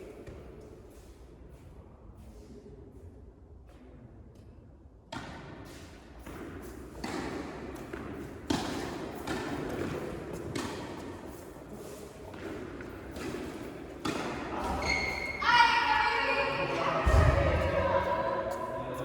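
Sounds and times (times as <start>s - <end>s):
tennis ball bouncing on court: 6.2s - 11.1s, 12.3s - 15.3s
tennis ball hit by rackets: 6.3s - 11.1s, 12.3s - 14.8s.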